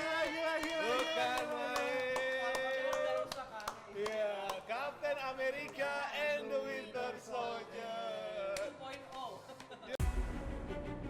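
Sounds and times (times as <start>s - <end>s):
music with steady beat: 10.0s - 11.0s.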